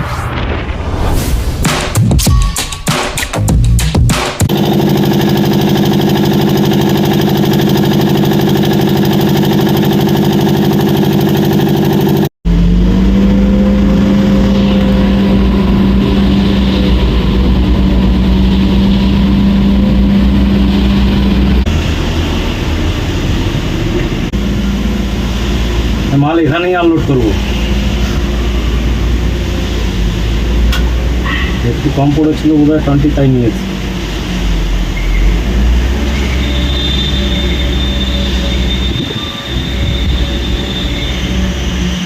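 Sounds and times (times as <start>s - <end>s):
heavy machine engine running: 4.4s - 42.0s.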